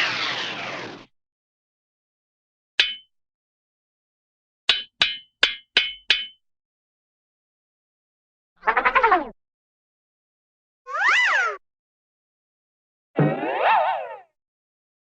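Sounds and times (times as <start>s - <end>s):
cartoon knocking with hollow ring: 2.8s - 3.1s, 4.7s - 6.4s.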